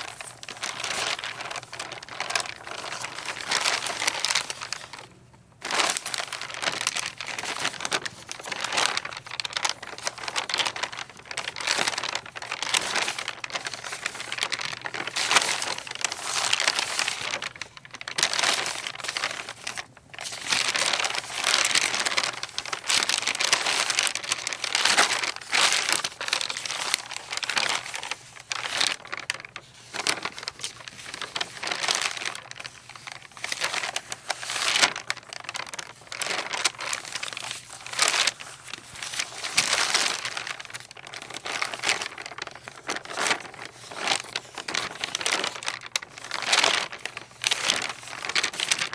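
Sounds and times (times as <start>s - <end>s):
paper rustling in wind: 0.0s - 48.9s.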